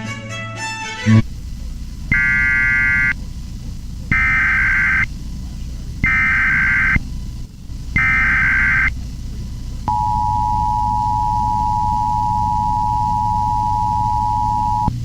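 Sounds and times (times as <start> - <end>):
two-tone attention signal: 2.1 - 3.1, 6.0 - 7.0, 8.0 - 8.9, 9.9 - 14.9
warbling digital data tones: 2.1 - 3.2, 4.1 - 5.1, 6.0 - 7.0, 8.0 - 8.9.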